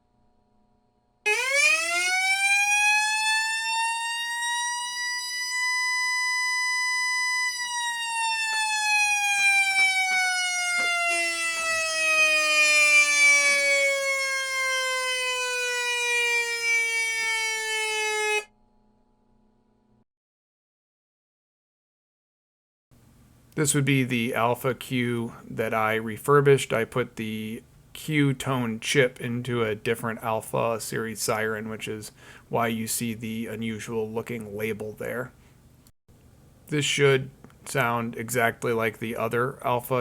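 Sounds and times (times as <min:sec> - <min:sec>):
electronic siren winding: 0:01.3 - 0:18.6.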